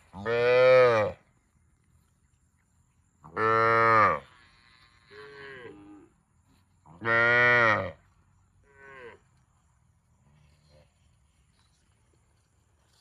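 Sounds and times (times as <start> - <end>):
cow mooing: 7.0 - 8.0.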